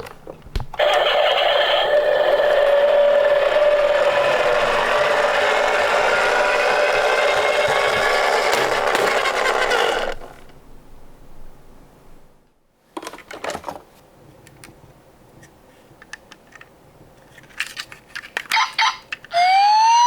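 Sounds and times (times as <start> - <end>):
toy cars rolling on wood: 0.8 - 10.5.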